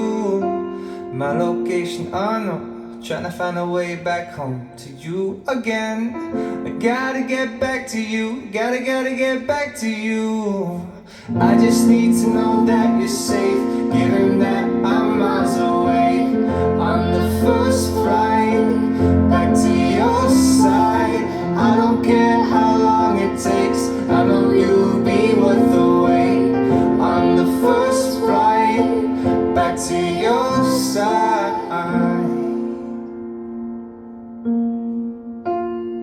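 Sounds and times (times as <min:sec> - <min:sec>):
pop song melody: 0:00.0 - 0:34.0
sustained keyboard chords: 0:11.3 - 0:32.2.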